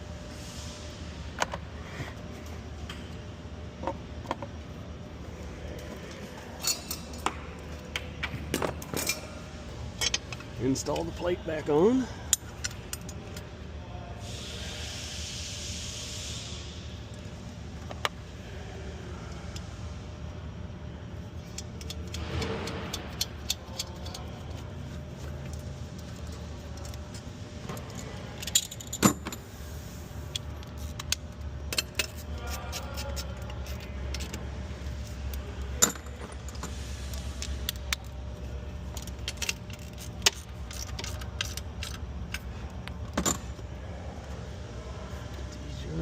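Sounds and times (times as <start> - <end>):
metal hardware clinking: 35.7 - 36.7.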